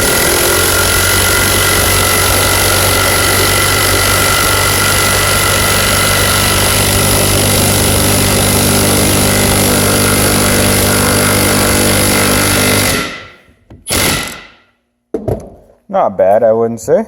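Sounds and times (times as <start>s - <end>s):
impact wrench hammering: 0.0s - 15.6s.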